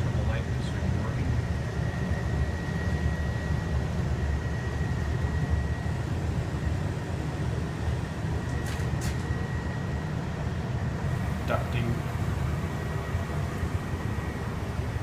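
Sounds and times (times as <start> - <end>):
furnace blower rumble: 0.0 - 15.0.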